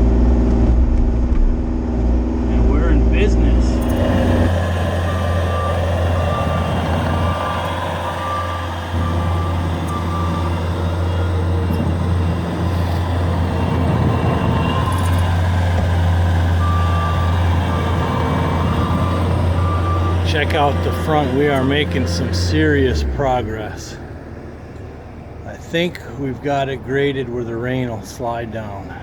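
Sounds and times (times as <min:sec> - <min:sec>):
diesel engine running: 0:00.0 - 0:29.0
backup alarm beeping: 0:03.4 - 0:23.1.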